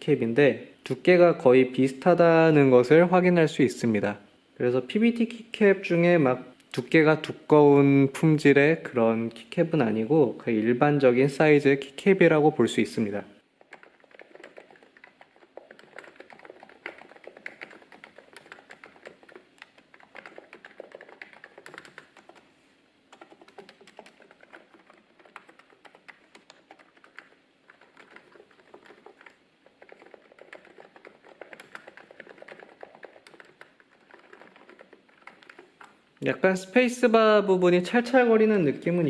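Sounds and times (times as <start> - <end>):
keyboard typing: 13.6 - 22.5, 23.1 - 36.0.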